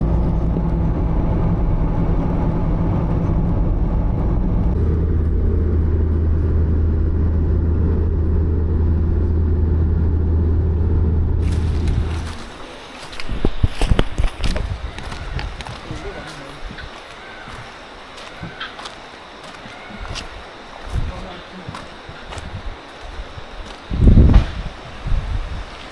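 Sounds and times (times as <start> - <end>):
vehicle engine rumble: 0.0 - 25.9.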